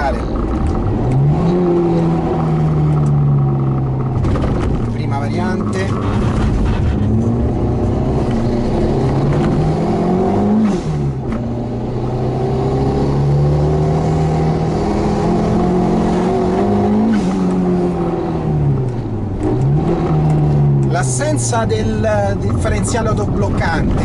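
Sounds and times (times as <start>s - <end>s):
turbocharged car engine pulling: 0.0s - 24.0s.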